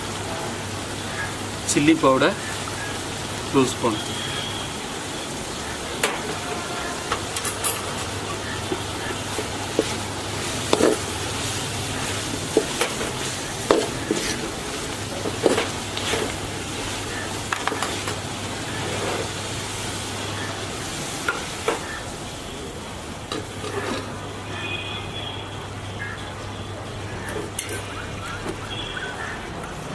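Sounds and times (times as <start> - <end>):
food sizzling in a pan: 0.0 - 24.1
spoon scraping a pan: 6.0 - 19.4, 23.3 - 24.2, 27.2 - 28.0.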